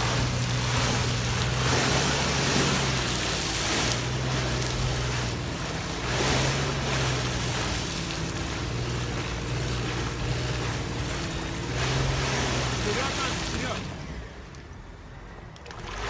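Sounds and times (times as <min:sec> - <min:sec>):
rushing noise: 0:00.0 - 0:14.2
car engine low hum: 0:00.0 - 0:16.0.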